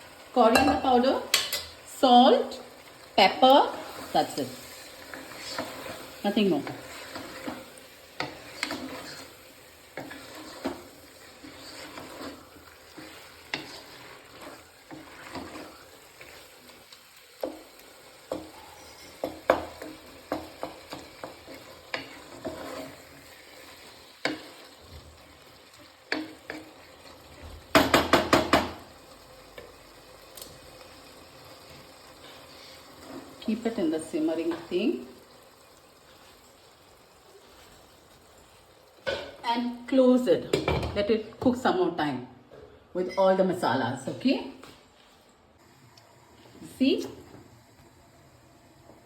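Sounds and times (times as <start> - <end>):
faint sizzle: 0.0 - 49.0.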